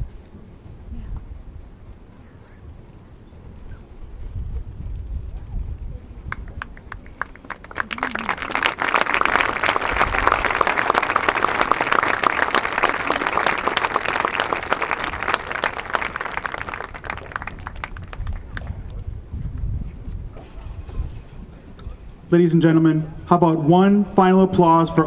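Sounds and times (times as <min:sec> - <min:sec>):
crowd applauding: 0:06.3 - 0:18.8.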